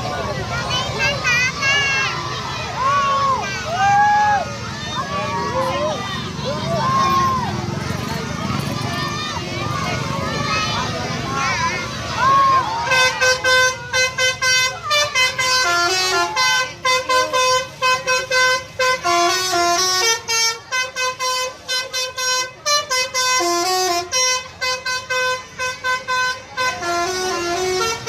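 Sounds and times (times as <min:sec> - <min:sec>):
bus musical horn melody: 0:12.8 - 0:28.0.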